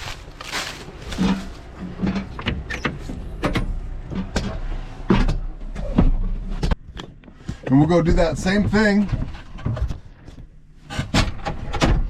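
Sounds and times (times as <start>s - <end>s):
low engine rumble: 0.0s - 6.4s.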